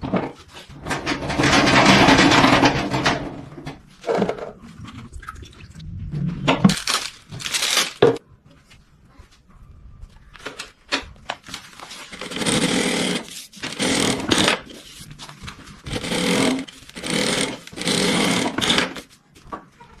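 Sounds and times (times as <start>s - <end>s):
sewing machine whirring: 12.1s - 14.7s, 15.8s - 19.0s.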